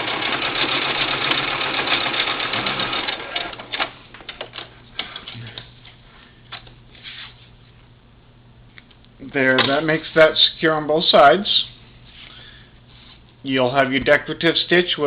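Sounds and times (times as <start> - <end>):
sewing machine stitching: 0.0 - 3.9.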